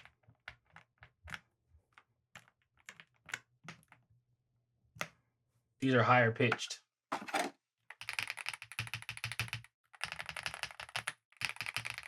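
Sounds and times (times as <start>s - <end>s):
mechanical keyboard keys clacking: 8.0s - 12.0s.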